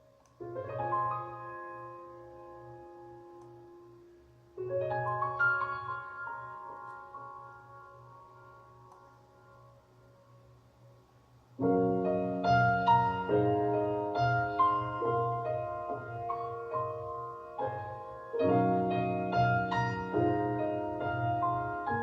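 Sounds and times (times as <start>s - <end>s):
solo piano music: 0.0s - 10.4s, 11.6s - 22.0s.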